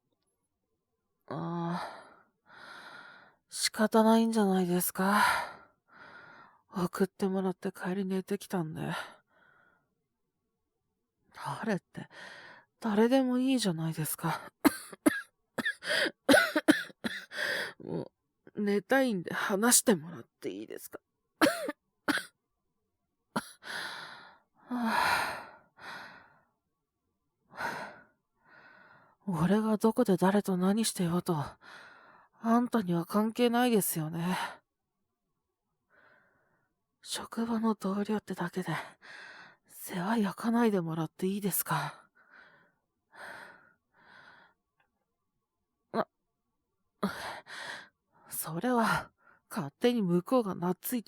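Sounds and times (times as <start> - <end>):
man coughing: 14.7 - 17.2, 21.4 - 22.3.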